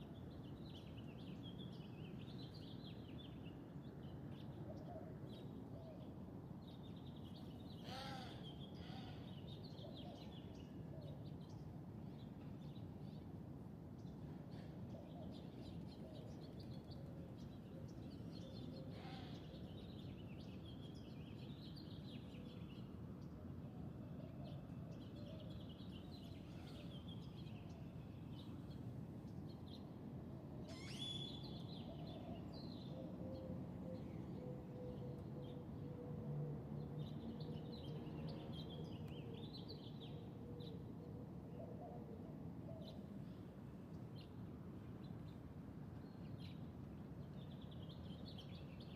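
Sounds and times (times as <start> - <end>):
sharp bird call: 30.7 - 31.5
birds singing: 30.7 - 36.0.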